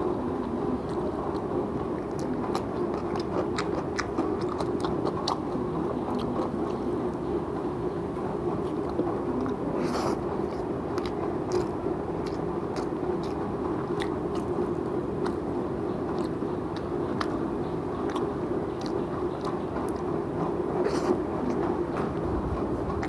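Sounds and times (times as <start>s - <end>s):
person chewing food: 0.4s - 7.2s, 8.6s - 23.0s
wet mouth clicks: 18.0s - 20.1s.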